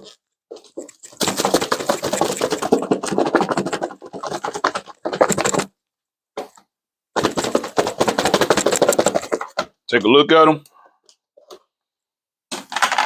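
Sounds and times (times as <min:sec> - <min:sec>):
chicken wings rattling in container: 0:00.8 - 0:05.7, 0:07.2 - 0:09.6.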